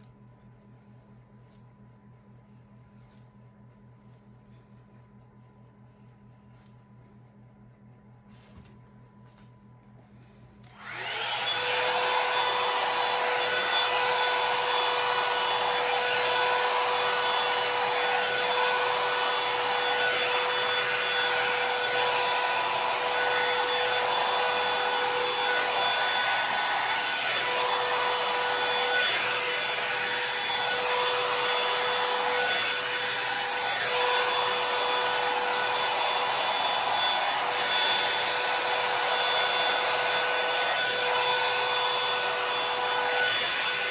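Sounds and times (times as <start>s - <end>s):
hot air brush blowing: 10.7s - 43.9s.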